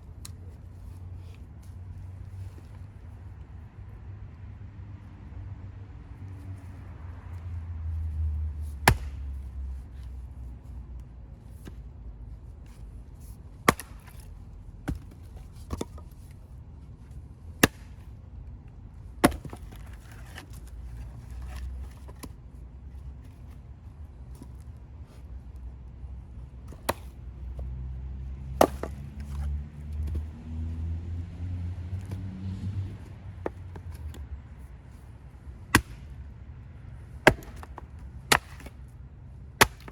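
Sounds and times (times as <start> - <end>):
axe chopping wood: 8.6 - 9.4, 13.6 - 16.0, 17.6 - 18.1, 19.2 - 20.6, 26.6 - 27.1, 28.4 - 30.3, 35.6 - 36.3, 37.1 - 38.9, 39.5 - 39.9.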